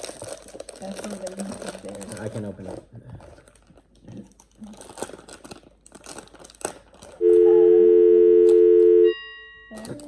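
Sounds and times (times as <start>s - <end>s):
plastic wrapper crinkling: 0.0s - 7.3s, 9.7s - 10.0s
steady two-note tone: 7.2s - 9.9s.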